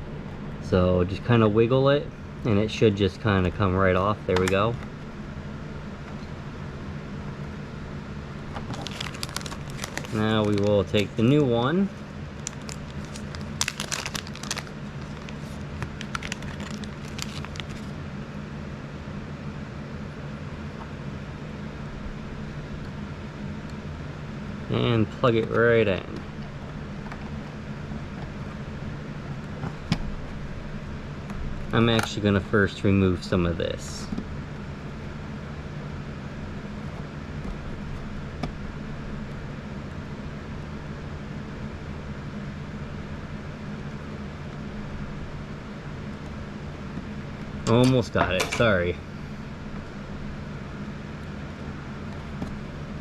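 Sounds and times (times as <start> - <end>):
steady low hum: 0.0 - 53.0
plastic packaging crinkling: 8.6 - 11.5, 12.3 - 17.9.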